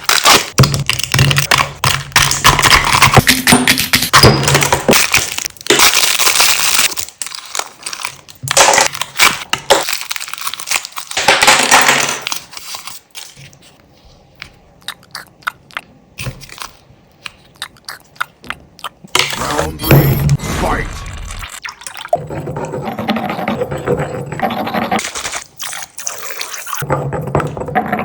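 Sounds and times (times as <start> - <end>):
harsh crushing and crunching: 0.0 - 13.1.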